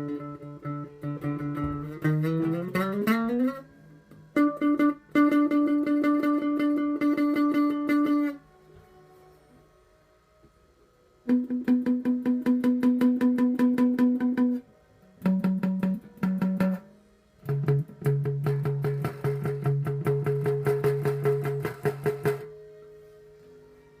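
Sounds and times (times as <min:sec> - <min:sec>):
bass guitar plucking: 0:00.0 - 0:03.7, 0:04.3 - 0:08.4, 0:11.3 - 0:14.6, 0:15.2 - 0:22.5.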